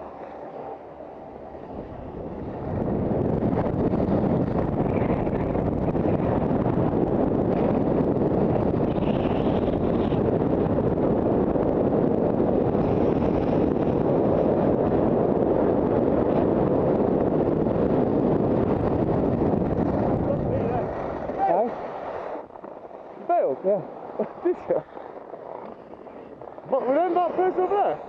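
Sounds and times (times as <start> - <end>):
wind buffeting microphone: 0.0 - 28.0.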